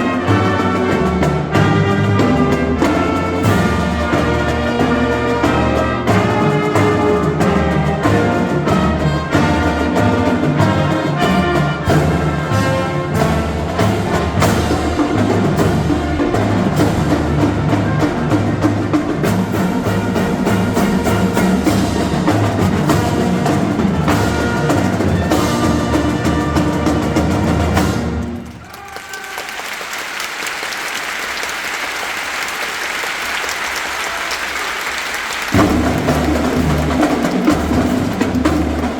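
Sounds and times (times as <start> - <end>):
marching band playing: 0.0 - 38.9
audience applause: 28.2 - 38.9.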